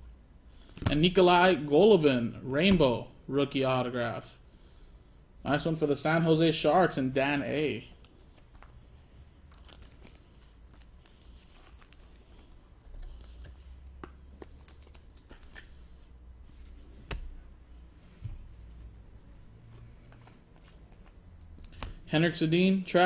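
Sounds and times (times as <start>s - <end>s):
trading cards clicking and scraping: 9.5s - 15.9s, 19.7s - 22.0s.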